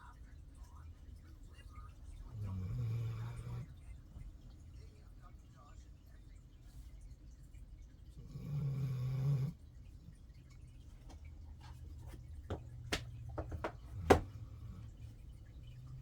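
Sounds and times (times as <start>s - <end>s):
pet snoring: 2.3s - 3.7s, 8.2s - 9.6s.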